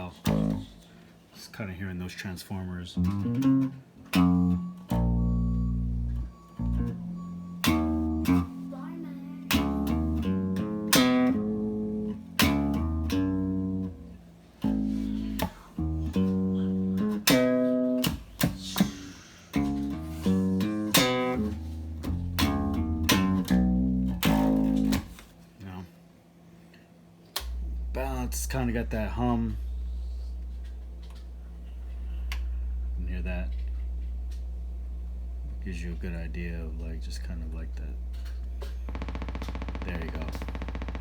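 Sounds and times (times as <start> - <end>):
growling plucked electric guitar: 0.0 - 0.8, 3.0 - 14.1, 14.7 - 25.1, 38.9 - 41.0.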